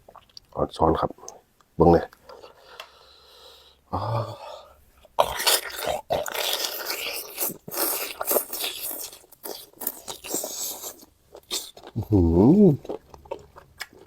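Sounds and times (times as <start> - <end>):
crunching and chewing food: 5.0 - 14.0.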